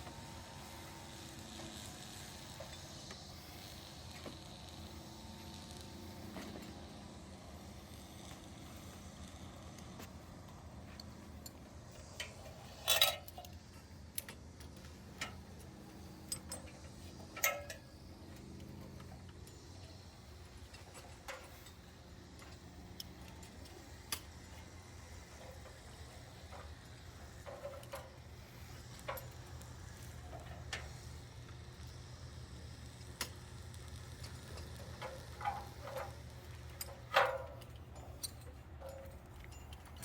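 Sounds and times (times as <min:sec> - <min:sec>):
low steady hum: 0:00.0 - 0:40.0
metal hardware clicking and clinking: 0:10.9 - 0:31.0, 0:34.2 - 0:40.0.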